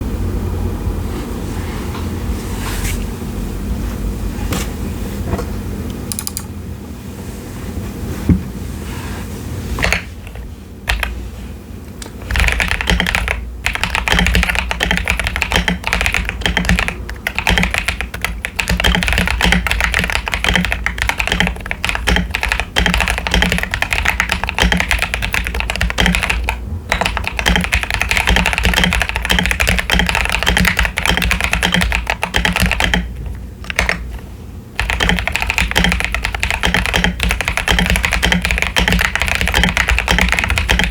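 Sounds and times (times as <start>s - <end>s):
typing on mechanical keyboard: 6.1s - 6.4s, 9.8s - 11.2s, 12.0s - 34.0s, 34.8s - 40.9s.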